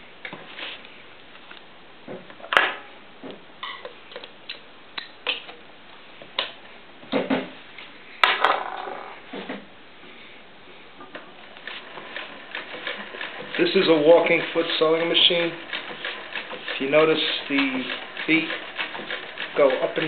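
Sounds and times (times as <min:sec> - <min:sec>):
sewing machine clicks and knocks: 0:11.6 - 0:20.0.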